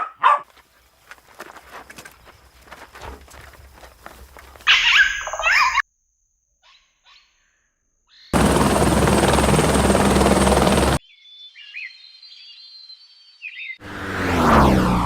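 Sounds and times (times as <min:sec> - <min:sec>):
bird-like chirps: 0:04.7 - 0:05.9, 0:06.6 - 0:08.4, 0:11.0 - 0:13.8.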